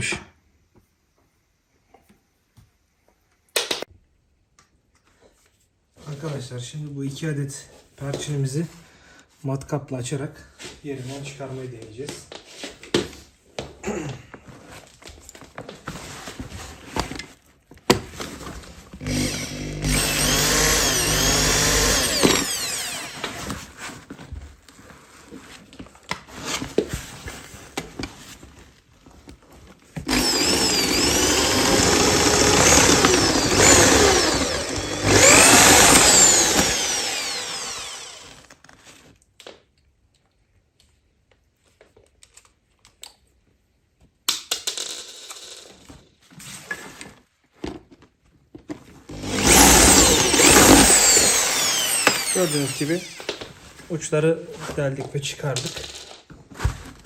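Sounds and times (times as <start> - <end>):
electric drill drilling metal: 19.0 - 23.5, 30.0 - 38.6, 49.1 - 53.5.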